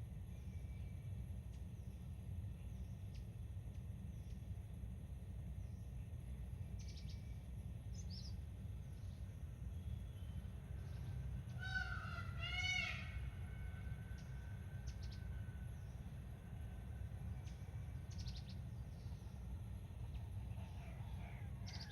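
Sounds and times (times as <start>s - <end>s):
birds chirping: 17.3s - 21.9s.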